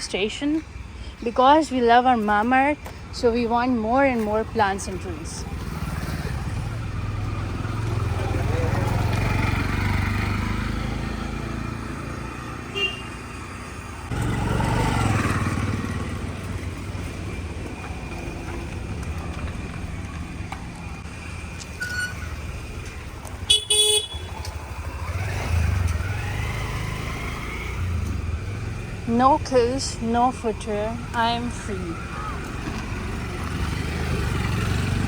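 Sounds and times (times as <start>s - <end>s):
traffic passing: 0.0s - 35.0s
vehicle horn toot: 12.7s - 13.2s, 23.4s - 24.4s.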